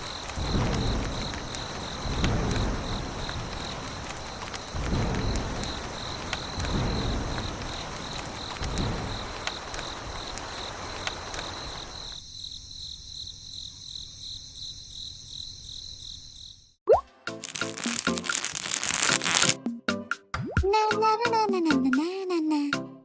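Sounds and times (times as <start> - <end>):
cricket chirping: 0.0 - 16.8.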